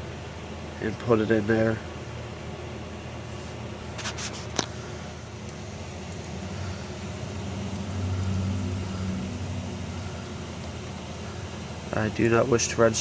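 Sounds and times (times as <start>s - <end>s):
computer fans whirring: 0.0s - 13.0s
low hum: 3.7s - 12.4s.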